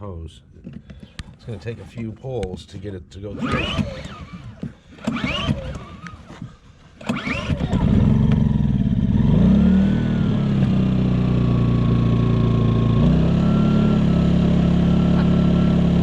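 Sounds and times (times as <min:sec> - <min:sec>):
generator engine running: 0:03.3 - 0:16.0.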